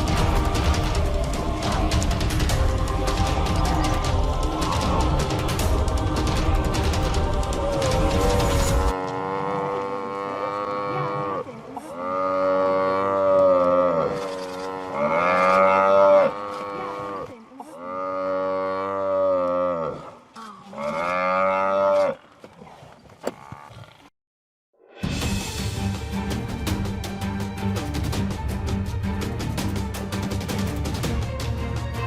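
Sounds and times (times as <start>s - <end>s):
buffalo mooing: 8.9s - 22.2s.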